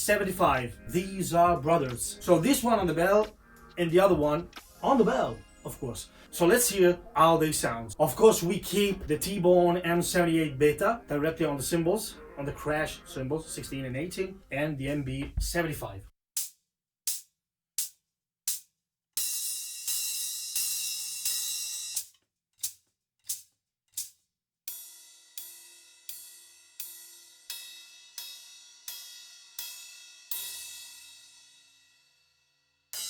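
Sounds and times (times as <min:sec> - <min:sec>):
hi-hat strokes: 0:16.4 - 0:31.0
cymbal strokes ringing: 0:19.2 - 0:22.0, 0:24.7 - 0:31.8.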